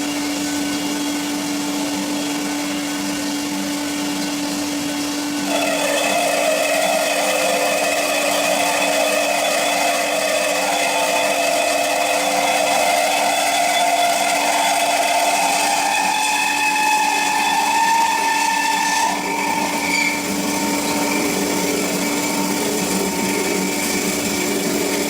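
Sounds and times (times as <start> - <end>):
metal band saw running: 0.0 - 25.0
saw blade grinding through metal: 5.5 - 25.0.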